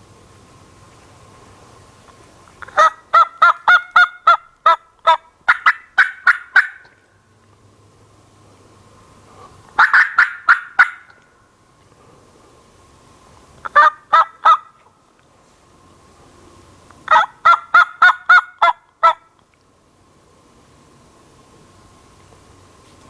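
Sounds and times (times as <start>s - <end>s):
turkey yelping: 2.6s - 7.0s, 9.8s - 11.2s, 13.6s - 14.8s, 17.0s - 19.3s.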